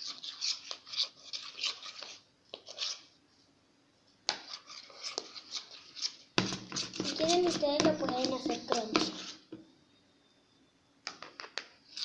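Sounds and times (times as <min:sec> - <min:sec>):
spoon scraping in a bowl: 0:00.0 - 0:03.2, 0:04.3 - 0:09.6.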